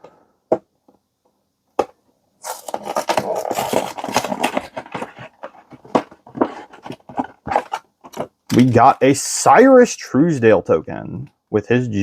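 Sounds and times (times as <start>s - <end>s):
packaging tearing and crinkling: 2.4s - 6.1s
small rustles and taps: 4.0s - 8.8s.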